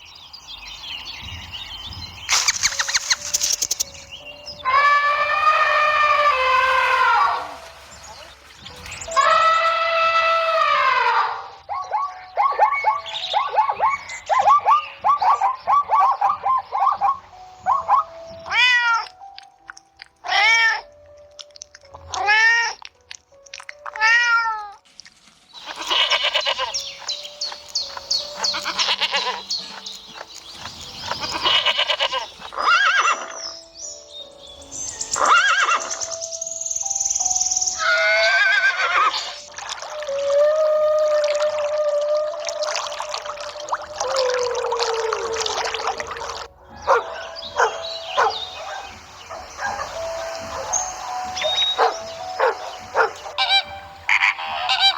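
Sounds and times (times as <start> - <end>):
drawn-out rising and falling calls: 2.2 - 18.8, 34.7 - 54.9
animal chattering calls: 2.3 - 4.0, 25.6 - 33.5, 35.2 - 36.2, 46.8 - 54.9.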